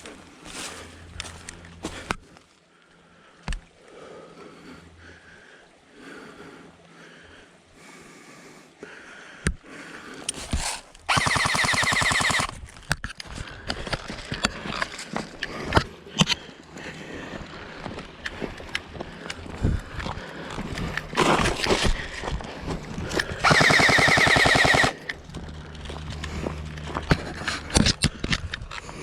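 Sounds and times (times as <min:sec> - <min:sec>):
airsoft gun full-auto burst: 0:11.1 - 0:12.6, 0:23.4 - 0:25.1
rustling: 0:21.0 - 0:22.2.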